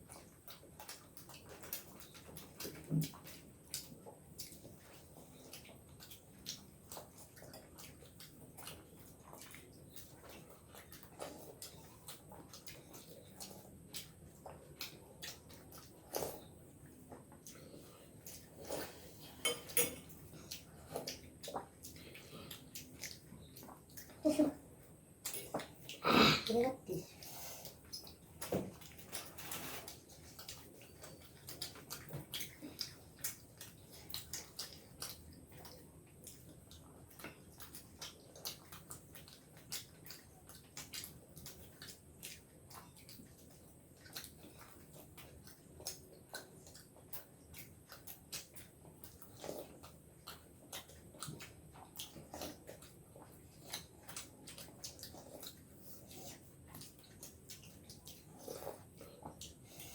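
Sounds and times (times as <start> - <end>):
people chewing food: 0.0 - 59.9
wet mouth clicks and smacks: 29.8 - 59.9.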